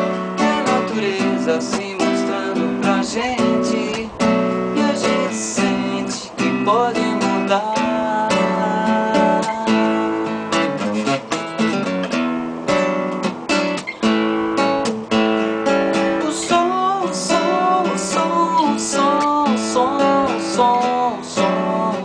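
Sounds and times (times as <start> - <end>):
person singing: 0.0 - 10.6, 16.0 - 22.0
strummed acoustic guitar: 0.0 - 22.0.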